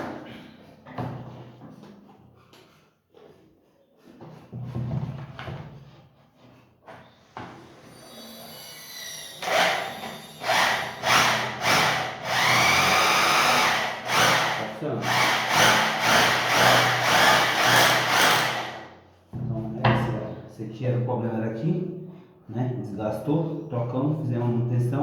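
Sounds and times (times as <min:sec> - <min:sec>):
rotary hammer running: 0:09.4 - 0:18.8.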